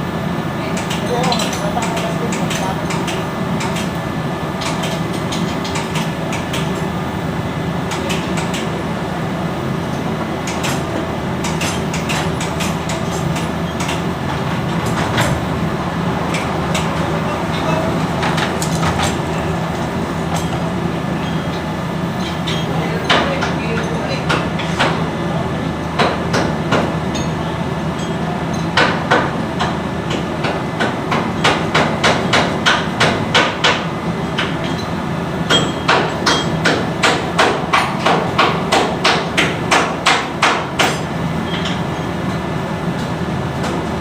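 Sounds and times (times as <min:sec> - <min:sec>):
loud machinery drone: 0:00.0 - 0:23.1.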